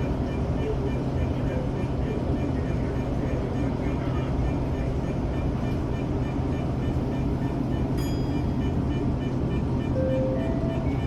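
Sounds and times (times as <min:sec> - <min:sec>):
train low rumble and hum: 0:00.0 - 0:11.0.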